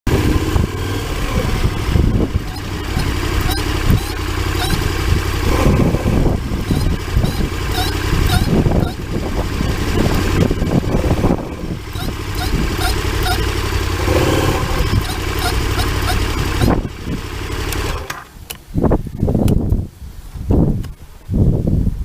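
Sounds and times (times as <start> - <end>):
vehicle low rumble: 0.1 - 20.9
high-pitched brake squeaks: 2.2 - 5.2, 6.5 - 9.4, 11.7 - 16.9.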